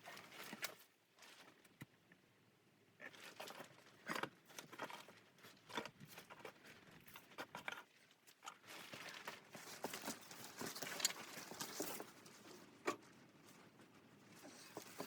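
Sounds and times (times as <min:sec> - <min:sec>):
soft crunches and rustles: 0:00.0 - 0:02.0, 0:03.0 - 0:15.0.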